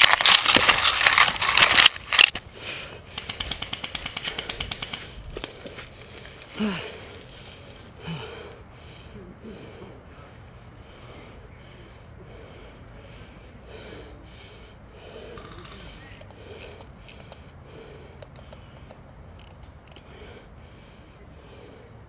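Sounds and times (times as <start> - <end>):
rapid sharp clicks: 3.1 - 5.6
short falling breaths or grunts: 6.5 - 7.2.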